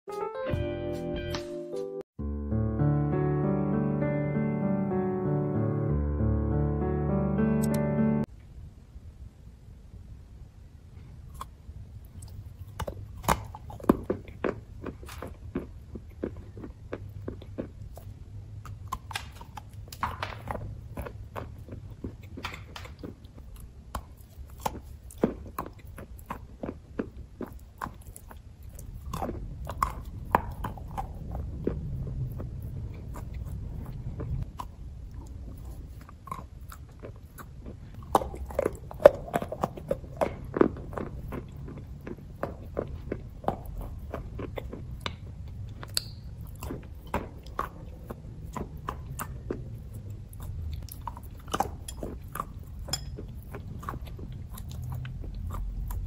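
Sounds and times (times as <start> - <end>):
chalk being chewed: 11.3 - 56.0.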